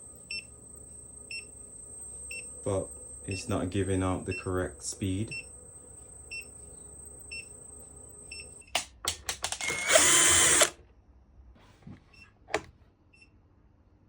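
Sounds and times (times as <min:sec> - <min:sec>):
steady high whine: 0:00.0 - 0:10.8
power drill burst: 0:09.4 - 0:10.8.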